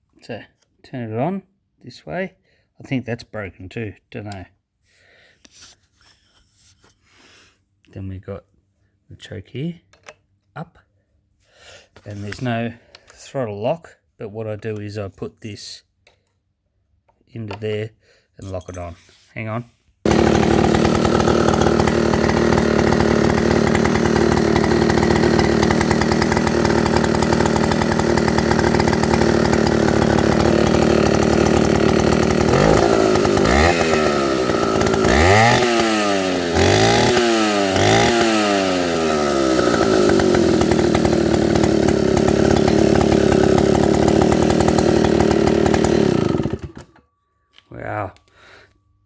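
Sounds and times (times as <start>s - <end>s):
chainsaw engine revving: 20.1s - 47.0s.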